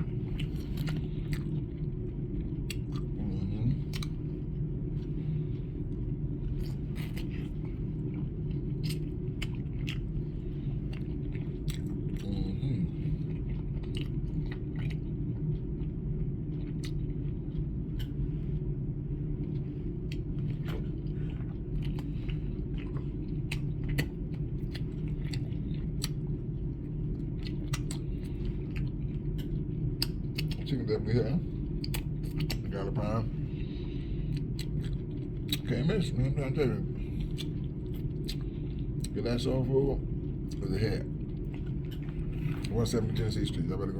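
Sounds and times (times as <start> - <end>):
person chewing: 0.0 - 18.7, 19.3 - 30.7, 31.5 - 36.1, 36.9 - 39.2, 40.0 - 43.4
steady low hum: 0.0 - 43.9
wet mouth clicks and smacks: 31.8 - 32.7, 34.4 - 35.7, 37.3 - 38.4.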